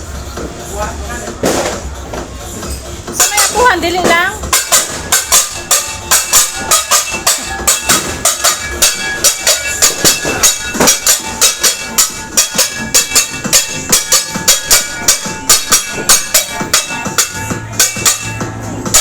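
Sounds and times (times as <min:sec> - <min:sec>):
metal pots and pans banging: 0:03.2 - 0:19.0.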